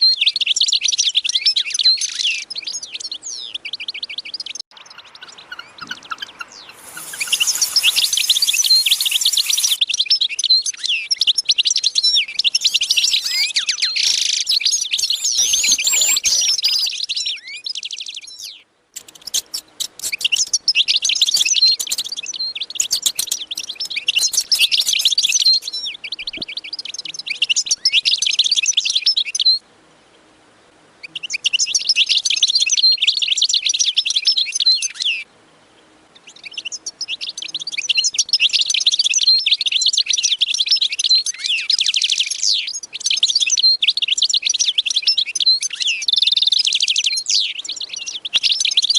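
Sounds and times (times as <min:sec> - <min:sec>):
small birds chirping: 0:00.0 - 0:29.6, 0:31.0 - 0:48.9.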